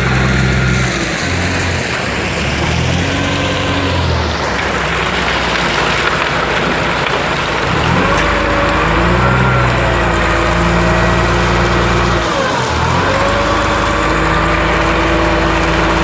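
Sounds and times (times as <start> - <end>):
engine humming: 0.0 - 16.0.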